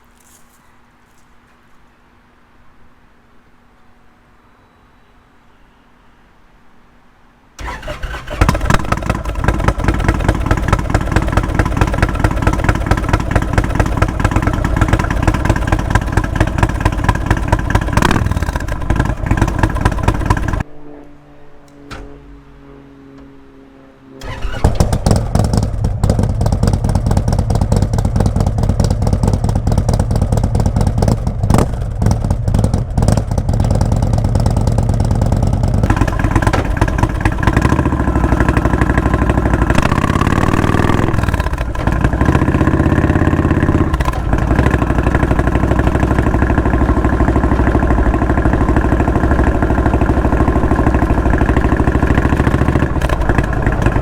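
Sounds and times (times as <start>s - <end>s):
motorcycle engine idling: 7.6s - 20.6s, 24.2s - 54.0s.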